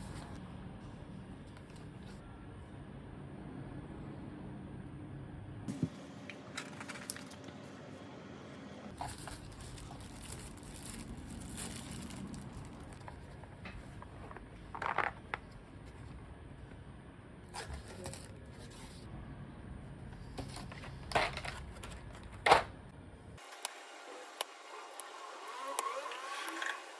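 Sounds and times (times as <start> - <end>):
packaging crinkling and rustling: 9.0 - 16.0.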